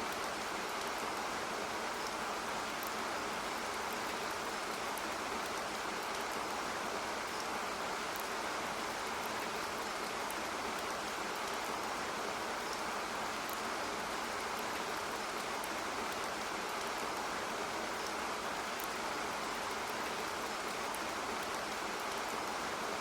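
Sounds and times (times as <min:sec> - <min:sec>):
steady rain falling: 0:00.0 - 0:23.0
faint high ticks: 0:02.0 - 0:03.0, 0:07.3 - 0:08.4, 0:09.0 - 0:11.9, 0:12.6 - 0:17.3, 0:18.0 - 0:22.6.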